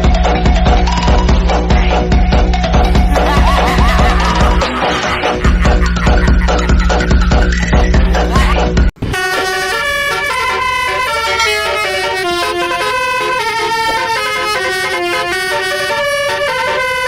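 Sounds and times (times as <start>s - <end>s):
air horn playing a tune: 9.0s - 17.0s.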